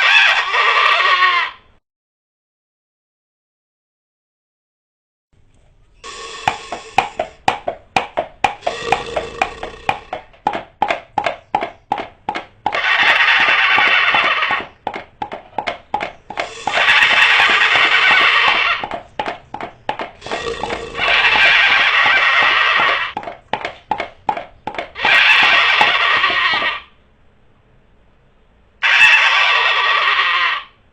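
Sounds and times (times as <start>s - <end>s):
hoofbeats clip-clop: 6.1s - 26.9s.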